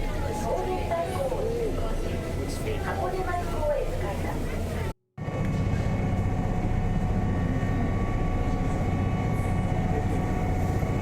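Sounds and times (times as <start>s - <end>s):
vehicle engine rumble: 3.6s - 11.0s.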